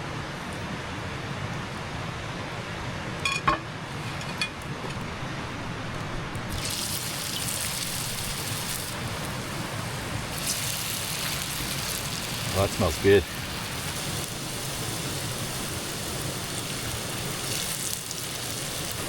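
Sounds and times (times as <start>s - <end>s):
dough sizzling in hot oil: 6.4s - 19.0s.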